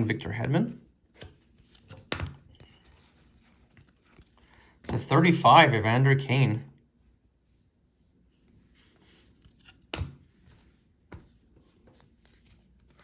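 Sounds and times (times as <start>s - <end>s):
trading cards rustling and sliding: 1.0s - 5.7s, 8.3s - 13.0s.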